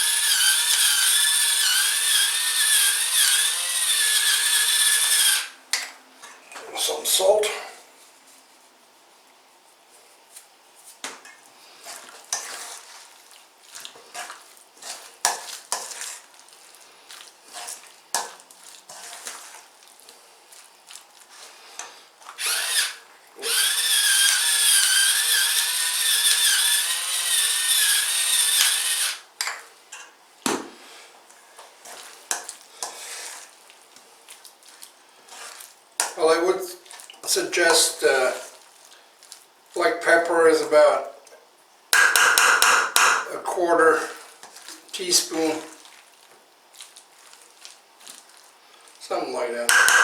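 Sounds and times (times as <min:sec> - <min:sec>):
electric pepper mill grinding: 0:00.0 - 0:05.6, 0:22.4 - 0:29.2, 0:49.7 - 0:50.0.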